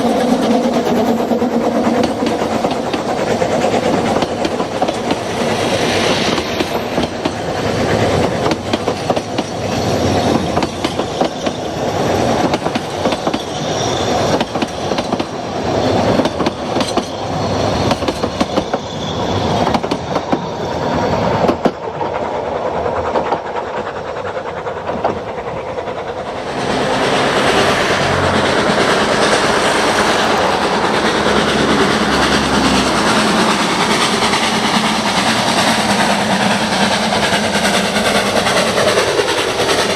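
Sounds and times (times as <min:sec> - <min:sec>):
train wheels clicking over rail joints: 0:00.0 - 0:39.9
steady rushing noise: 0:20.9 - 0:39.9.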